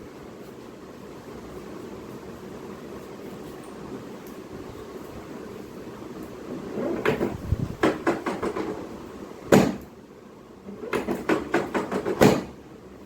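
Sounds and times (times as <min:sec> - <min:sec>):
quick knocks and clacks: 0:06.8 - 0:08.9, 0:10.8 - 0:12.6.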